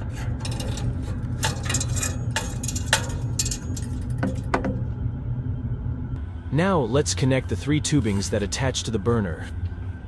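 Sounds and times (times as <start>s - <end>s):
metal clinks and scraping: 0.0s - 4.6s
steady low hum: 0.0s - 10.0s.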